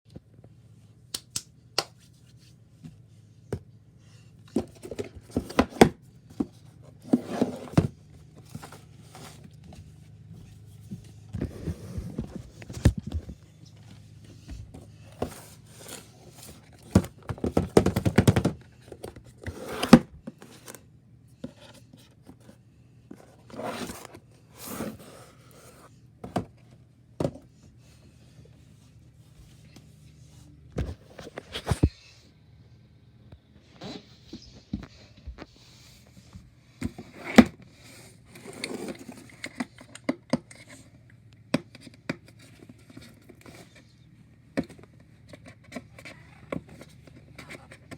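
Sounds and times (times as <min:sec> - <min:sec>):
cardboard and plastic rustling: 0:04.5 - 0:27.7, 0:33.6 - 0:40.9
packaging clicks and knocks: 0:16.8 - 0:19.2.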